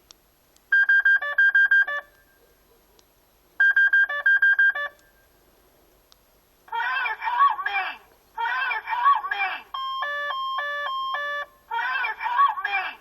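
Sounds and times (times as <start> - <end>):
car alarm beeps: 0.7 - 2.4, 3.6 - 5.3, 9.7 - 11.6.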